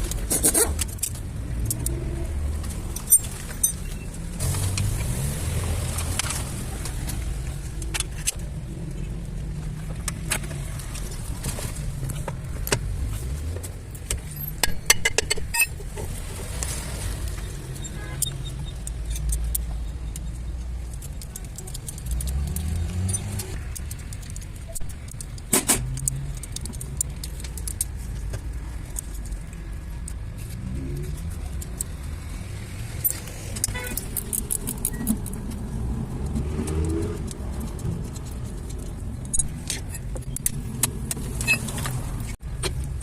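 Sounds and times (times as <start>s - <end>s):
low vehicle rumble: 0.0s - 43.0s
metal hand tools clinking: 2.9s - 4.1s.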